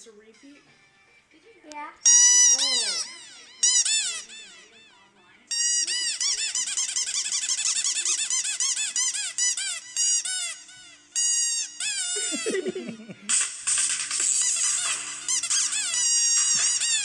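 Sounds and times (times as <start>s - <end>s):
squeaky toy squeaking: 2.0s - 12.7s, 14.2s - 17.0s.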